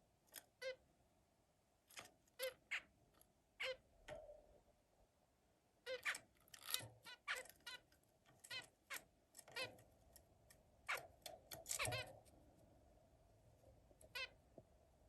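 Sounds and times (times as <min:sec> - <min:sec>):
finch chirping: 0:02.4 - 0:02.9, 0:03.6 - 0:03.8, 0:05.8 - 0:07.9, 0:08.5 - 0:09.8, 0:11.7 - 0:12.2, 0:14.0 - 0:14.4.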